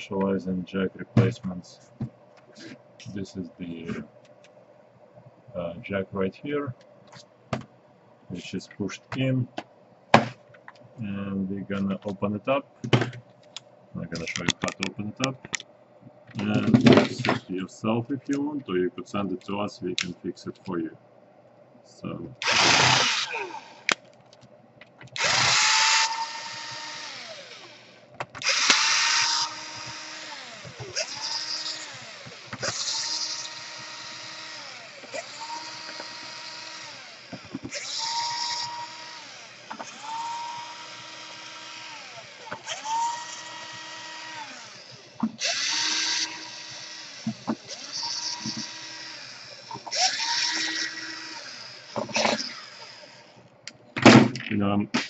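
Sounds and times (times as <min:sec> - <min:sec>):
electric screwdriver whine: 0:22.4 - 0:23.9, 0:25.2 - 0:53.3
screws rasping: 0:28.4 - 0:53.0.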